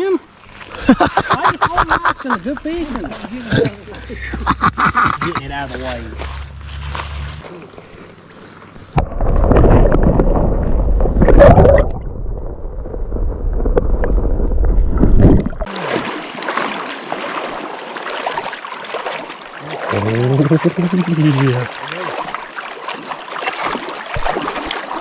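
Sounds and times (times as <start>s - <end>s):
hiss of flowing river water: 0.0s - 6.2s, 7.0s - 9.0s, 15.7s - 25.0s
muffled underwater water sloshing: 1.6s - 25.0s.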